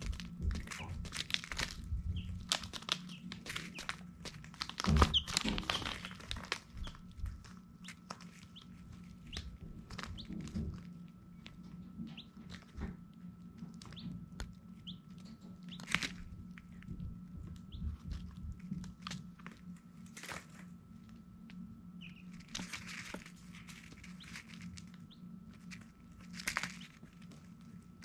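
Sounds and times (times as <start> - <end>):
thumps and rustling: 0.0 - 7.5
baby chicks peeping: 0.0 - 21.2, 21.9 - 27.8
taps clicks and scratching: 0.0 - 27.8
steady low hum: 0.0 - 28.0.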